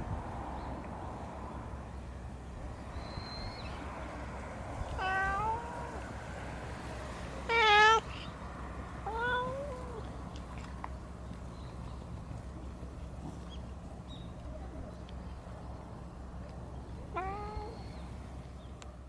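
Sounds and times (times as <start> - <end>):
cat meowing: 4.9 - 6.1, 7.4 - 8.3, 9.0 - 10.1, 17.1 - 17.8.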